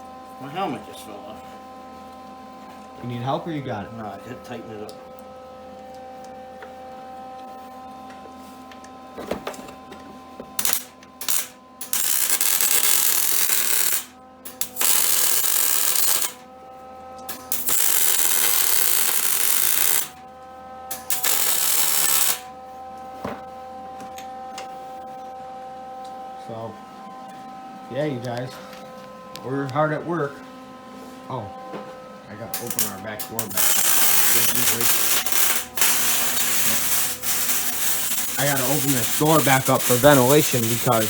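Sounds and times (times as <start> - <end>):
steady hum: 0.0 - 41.0
hissing arc welding bursts: 10.6 - 14.1, 14.7 - 16.4, 17.5 - 20.2, 21.1 - 22.5, 32.6 - 41.0.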